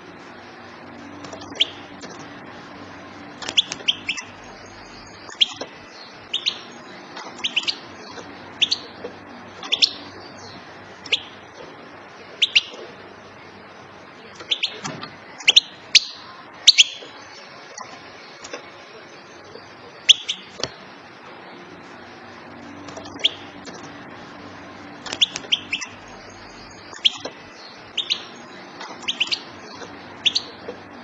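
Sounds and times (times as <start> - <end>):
steady background hiss: 0.0 - 31.0
goldfinch chirping: 0.4 - 20.8, 22.4 - 31.0.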